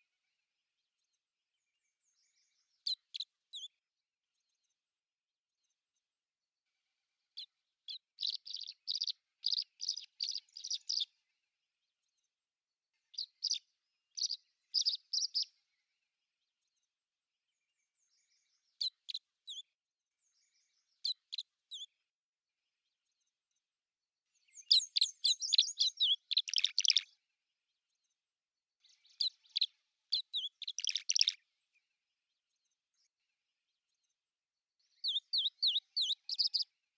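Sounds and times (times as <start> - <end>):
small bird chirping: 1.0 - 3.8, 7.2 - 12.3, 12.9 - 16.9, 17.5 - 22.0, 24.3 - 27.3, 28.8 - 34.2, 34.8 - 36.8.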